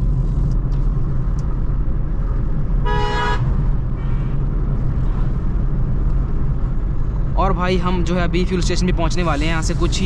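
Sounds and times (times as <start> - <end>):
car engine and road noise: 0.0 - 10.0
vehicle horn honking: 2.8 - 4.4.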